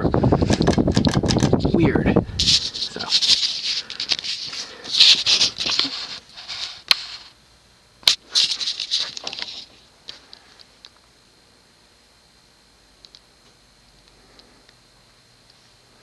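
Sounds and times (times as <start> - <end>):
rustling: 1.4 - 7.3.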